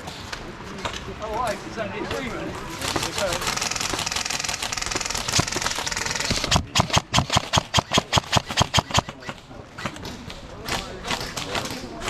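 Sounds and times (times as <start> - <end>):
fast mechanical rattle: 2.8 - 9.4.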